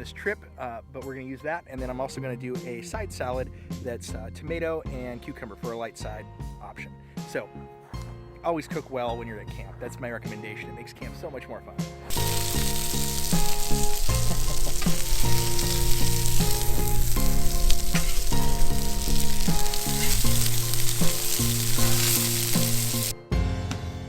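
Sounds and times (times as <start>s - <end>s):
background music: 0.0s - 24.0s
food sizzling on griddle: 12.1s - 23.2s.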